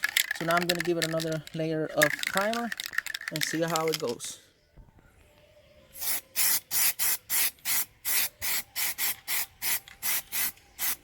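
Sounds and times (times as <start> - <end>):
aerosol can spraying bursts: 6.0 - 11.0.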